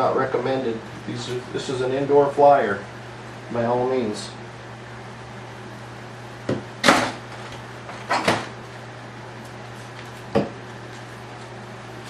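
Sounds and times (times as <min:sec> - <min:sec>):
steady low hum: 0:00.0 - 0:12.0
tools knocking on workbench: 0:10.3 - 0:10.6.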